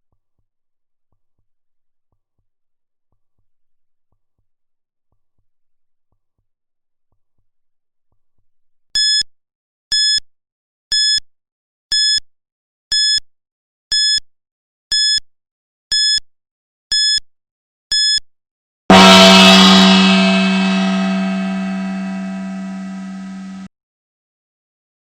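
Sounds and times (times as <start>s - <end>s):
loud gong ringing: 18.9s - 23.7s.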